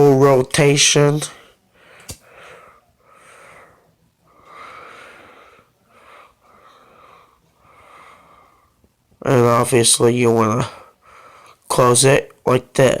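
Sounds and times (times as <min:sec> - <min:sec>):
person breathing through stuffy nose: 0:01.8 - 0:08.8.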